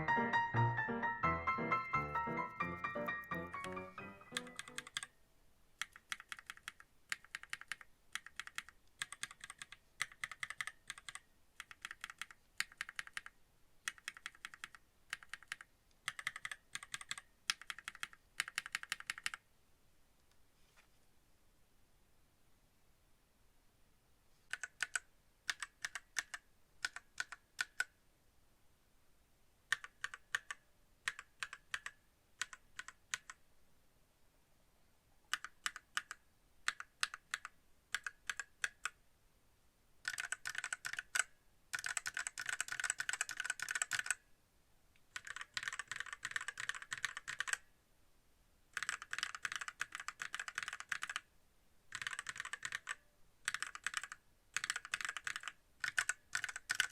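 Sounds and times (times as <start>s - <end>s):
mechanical keyboard typing: 1.0s - 5.2s, 5.8s - 19.4s, 24.5s - 28.0s, 29.7s - 33.4s, 35.3s - 39.0s, 40.0s - 44.2s, 45.1s - 47.6s, 48.8s - 51.3s, 51.9s - 56.9s.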